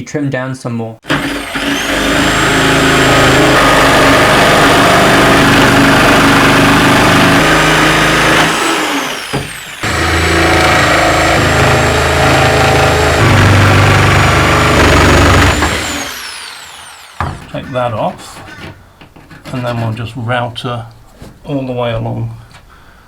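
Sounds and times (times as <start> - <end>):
electric router cutting wood: 1.0 - 17.7.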